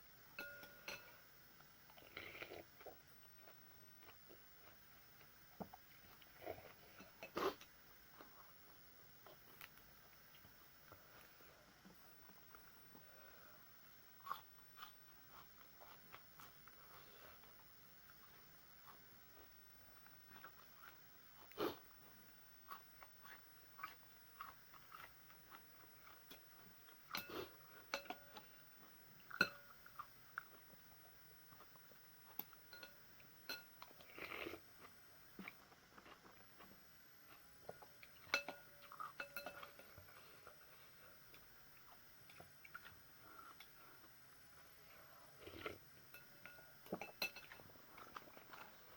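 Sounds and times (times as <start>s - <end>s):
utensils clinking against bowl: 0.4s - 1.2s, 38.3s - 40.0s, 46.1s - 47.6s
person chewing: 14.2s - 17.6s, 18.2s - 30.7s, 41.3s - 44.2s.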